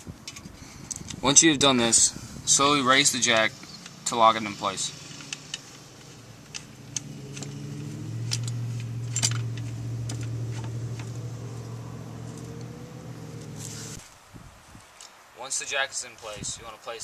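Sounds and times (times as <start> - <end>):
steady low hum: 4.9 - 14.0
car jack metallic clinks: 8.2 - 11.2.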